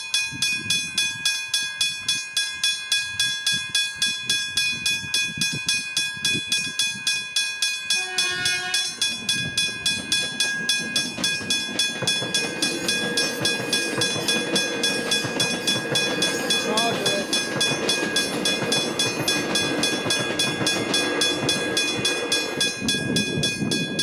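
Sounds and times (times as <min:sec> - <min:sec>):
level crossing bell ringing: 0:00.0 - 0:24.0
train horn: 0:07.9 - 0:09.0
train rumble: 0:07.9 - 0:24.0.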